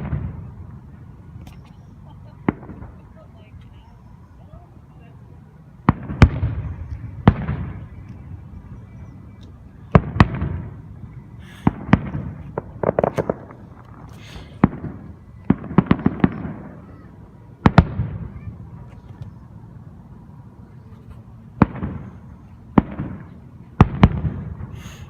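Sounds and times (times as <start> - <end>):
fireworks bangs: 0.0 - 0.9, 2.0 - 3.5, 5.8 - 8.6, 9.9 - 18.9, 21.6 - 25.0
fireworks crackling pops: 0.0 - 3.8, 5.8 - 8.3, 9.4 - 17.0, 21.0 - 25.0.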